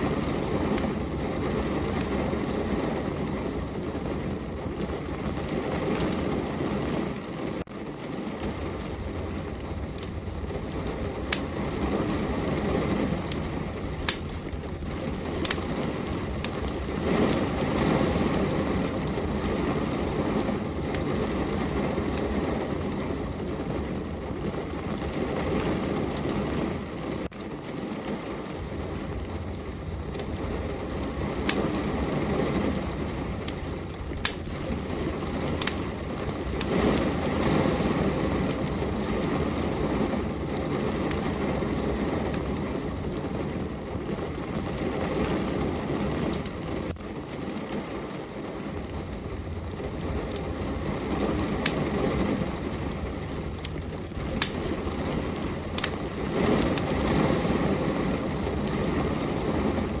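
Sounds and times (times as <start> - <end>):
steady rain falling: 0.0 - 60.0
wood fire crackling: 0.0 - 60.0
sharp pop of fire: 8.1 - 22.3, 27.2 - 42.6, 49.6 - 57.5.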